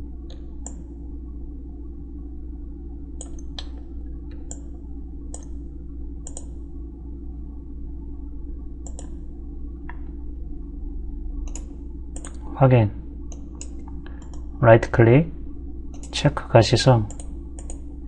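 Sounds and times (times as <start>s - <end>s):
low electrical hum: 0.0s - 18.0s
computer mouse clicking: 3.2s - 4.7s, 5.3s - 5.6s, 6.2s - 6.6s, 8.8s - 9.2s, 11.5s - 12.4s, 13.3s - 14.5s, 15.9s - 16.2s, 17.1s - 17.9s.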